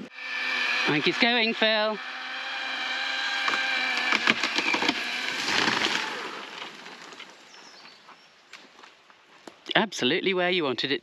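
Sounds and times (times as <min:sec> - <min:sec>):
chainsaw engine running: 0:00.0 - 0:07.3
tree crashing down: 0:03.4 - 0:07.6
tree trunk cracking and splintering: 0:03.4 - 0:07.7.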